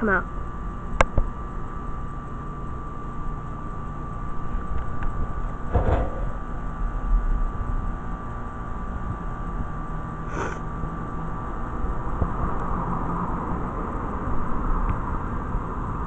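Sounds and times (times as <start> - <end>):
heat pump humming: 0.0 - 16.0
brief hiss: 10.3 - 10.6.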